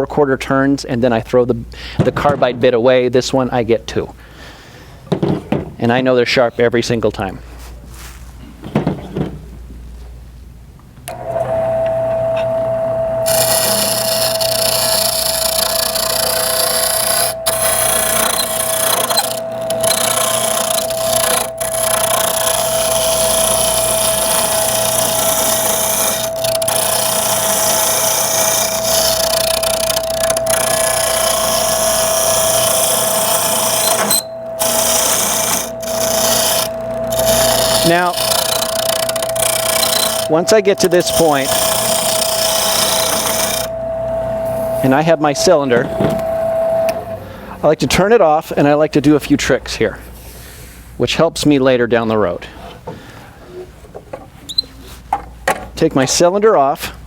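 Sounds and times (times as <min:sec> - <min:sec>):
wood lathe whine: 0:11.0 - 0:48.8
turning tool cutting wood: 0:11.1 - 0:48.8.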